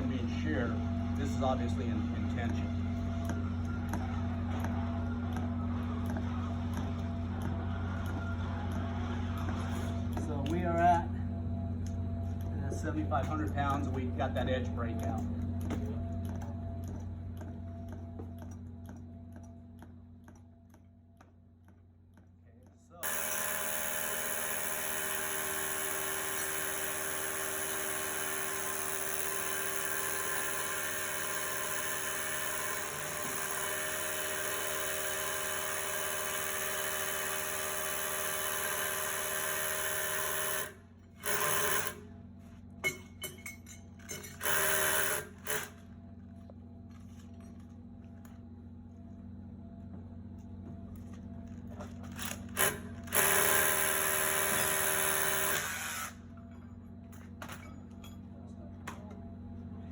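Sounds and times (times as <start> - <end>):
hammer drill boring into concrete: 23.0 - 42.0, 44.3 - 45.8, 52.2 - 56.3.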